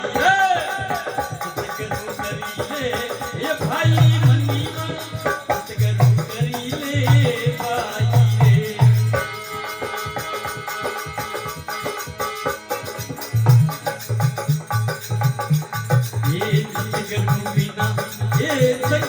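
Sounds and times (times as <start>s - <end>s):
rattling hand percussion: 0.0s - 19.0s
hand drum beating: 10.0s - 19.0s.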